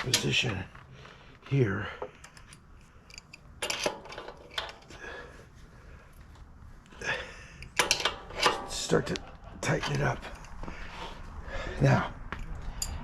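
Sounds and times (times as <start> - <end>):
metal tools clicking and clinking: 0.0 - 0.6, 2.0 - 5.0, 7.6 - 10.6, 12.4 - 13.0.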